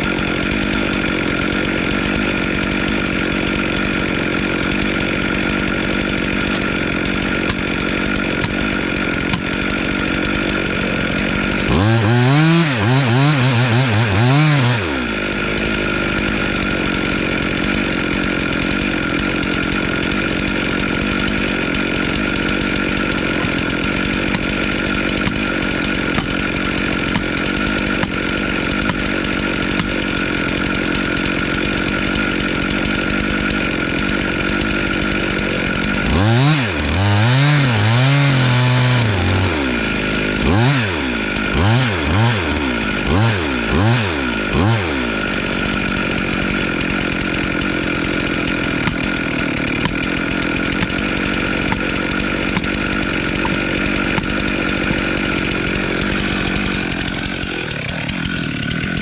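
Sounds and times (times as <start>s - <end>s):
chainsaw running: 0.0s - 59.0s
engine revving: 11.6s - 15.2s, 36.0s - 39.8s, 40.4s - 45.3s.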